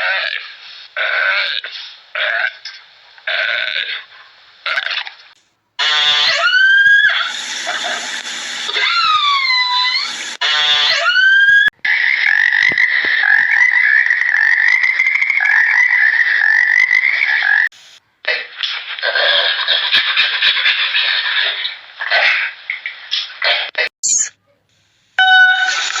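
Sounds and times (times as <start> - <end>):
long high steady animal call: 5.8 - 8.0, 8.6 - 17.7.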